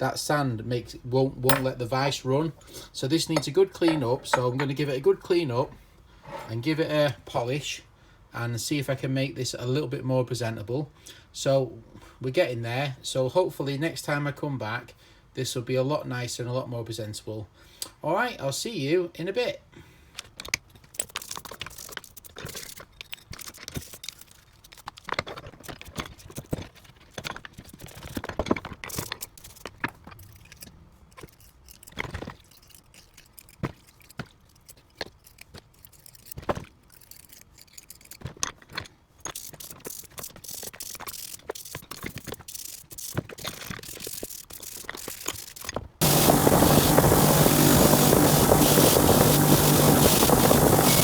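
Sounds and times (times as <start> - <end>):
metal parts clicking and scraping: 1.5 - 1.8, 3.3 - 4.8, 20.2 - 45.9
electric machine motor humming: 46.0 - 51.0.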